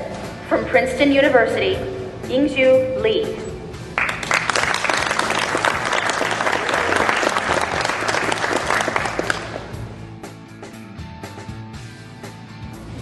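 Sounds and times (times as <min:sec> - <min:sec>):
audience applauding: 0:04.0 - 0:09.7.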